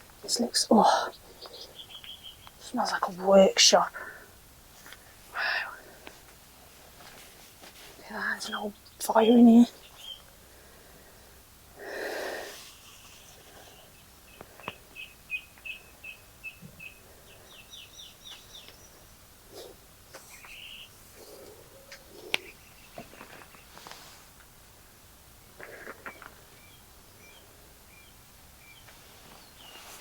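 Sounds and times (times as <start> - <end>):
small bird singing: 0.2 - 3.9, 8.1 - 10.3, 12.7 - 23.9, 25.4 - 30.0.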